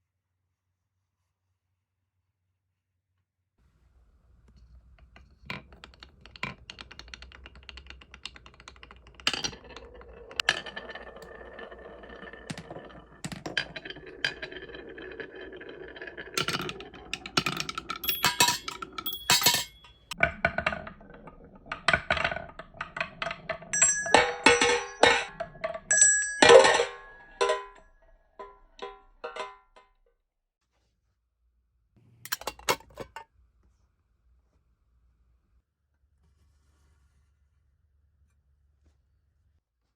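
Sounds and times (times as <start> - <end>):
marbles rolling on wooden track: 4.5 - 29.7
marbles striking metal chimes: 5.6 - 27.8.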